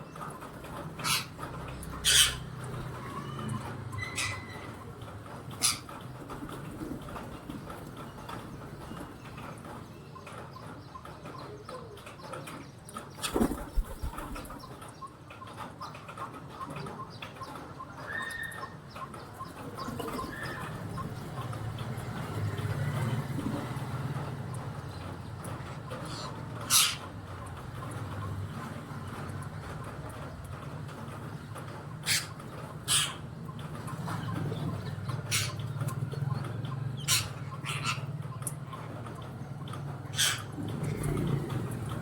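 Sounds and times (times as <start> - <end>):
low throaty bird sound: 0.0 - 15.2, 31.9 - 42.0
birds pecking ticks: 0.0 - 42.0.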